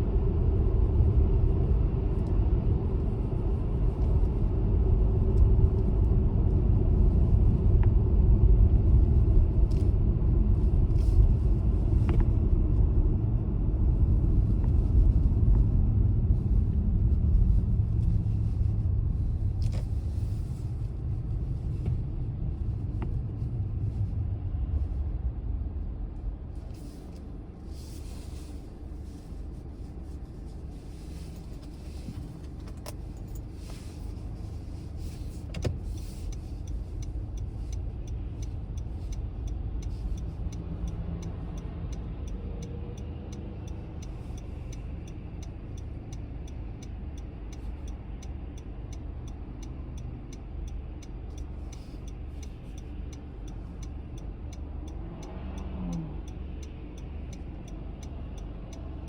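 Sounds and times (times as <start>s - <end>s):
car engine and tyre rumble: 0.0s - 59.0s
regular light ticking: 35.9s - 59.0s.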